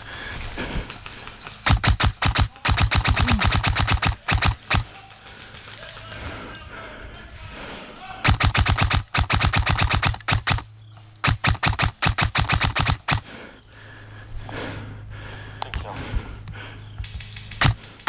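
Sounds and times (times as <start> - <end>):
airsoft rifle automatic fire: 0.8 - 6.4, 8.2 - 13.3, 17.1 - 18.0.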